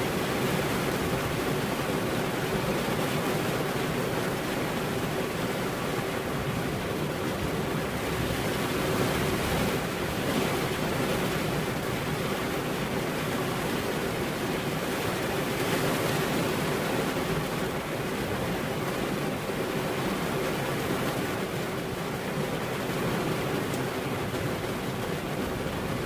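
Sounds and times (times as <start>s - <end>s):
steady rain: 0.0s - 26.0s.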